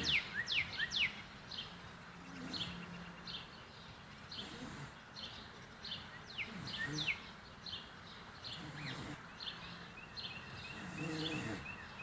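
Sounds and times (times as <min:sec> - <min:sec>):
bird chirping: 0:00.0 - 0:12.0.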